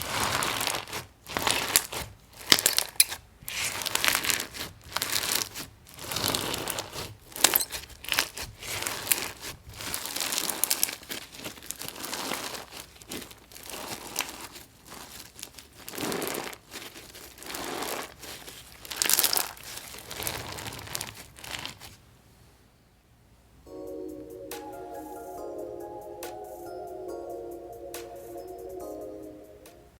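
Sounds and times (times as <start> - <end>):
crunchy slime being squeezed: 0.0 - 22.0.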